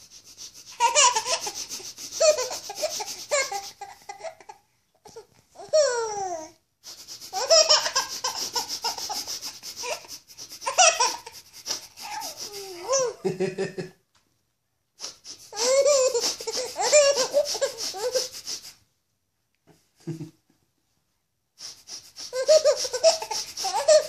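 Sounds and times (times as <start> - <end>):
baby laughing: 0.7 - 4.6, 5.2 - 6.4, 7.3 - 13.3, 15.5 - 18.4, 22.3 - 24.0.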